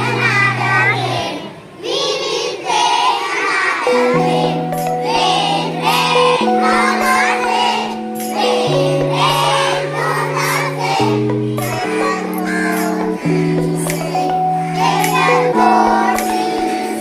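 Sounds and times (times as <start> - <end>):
children singing: 0.0 - 17.0
backing chords: 3.9 - 17.0.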